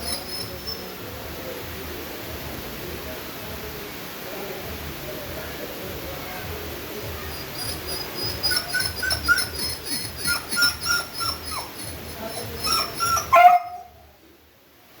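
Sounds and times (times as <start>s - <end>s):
dog whimpering and whining: 0.0s - 0.9s, 7.3s - 13.9s.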